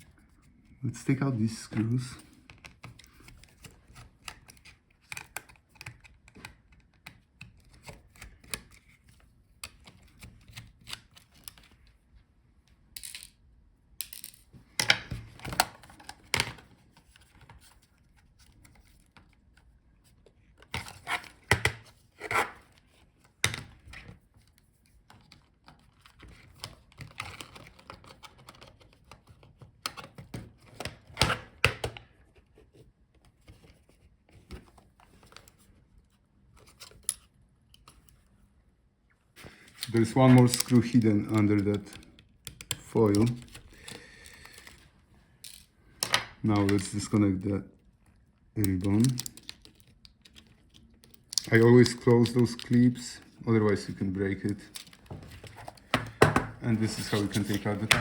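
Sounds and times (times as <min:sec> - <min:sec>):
laptop parts knocking: 0:55.1 - 0:56.6.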